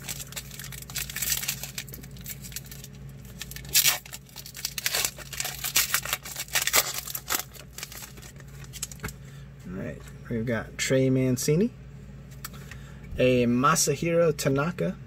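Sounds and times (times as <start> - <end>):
foil wrapper tearing and crinkling: 0.0 - 9.2.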